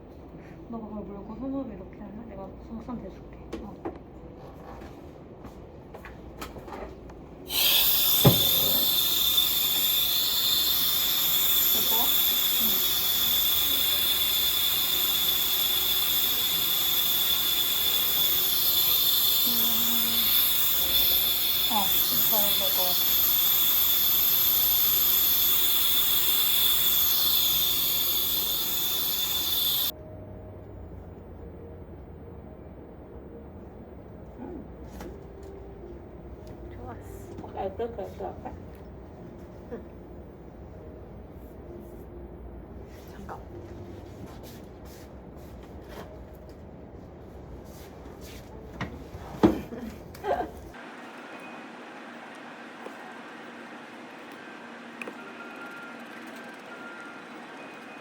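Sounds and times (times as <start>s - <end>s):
machine hissing and whining: 7.5s - 30.0s, 50.7s - 58.0s.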